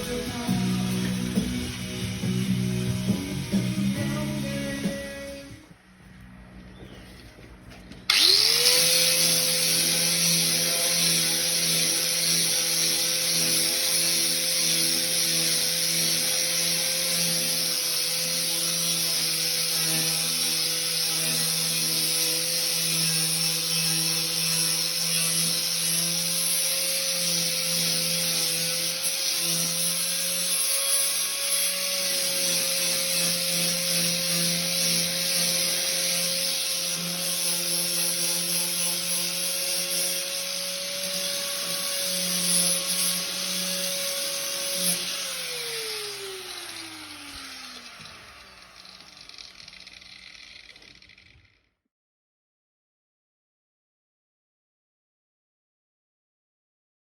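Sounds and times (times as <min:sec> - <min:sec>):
power tool running: 0:00.0 - 0:05.8, 0:07.9 - 0:51.8
power tool spinning down: 0:08.1 - 0:51.8.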